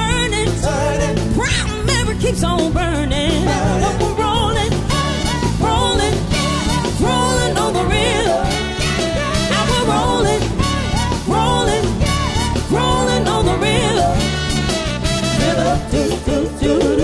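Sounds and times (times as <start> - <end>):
soul band playing: 0.0 - 17.0
person singing: 5.6 - 14.4, 15.4 - 17.0.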